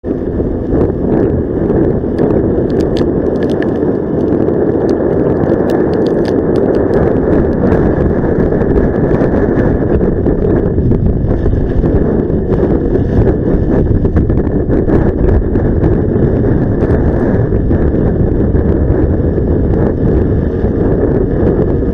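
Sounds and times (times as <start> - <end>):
wind rush on microphone: 0.0 - 21.9
sharp ticks: 2.1 - 7.9.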